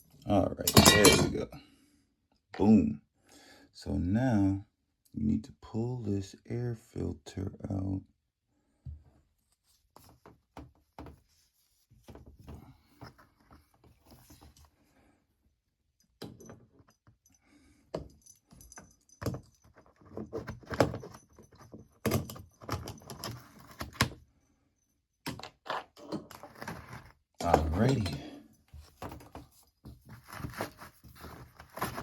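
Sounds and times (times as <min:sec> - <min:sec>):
metallic clinks and rattles: 0:00.6 - 0:01.4, 0:16.0 - 0:24.3.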